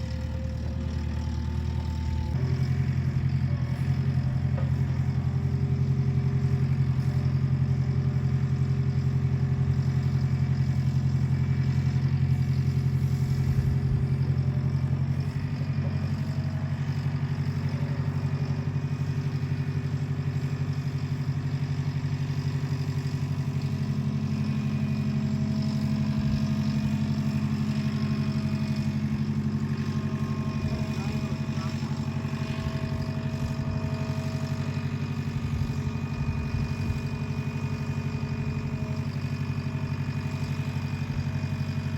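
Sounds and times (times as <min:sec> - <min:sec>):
engine running steadily: 0:00.0 - 0:41.9.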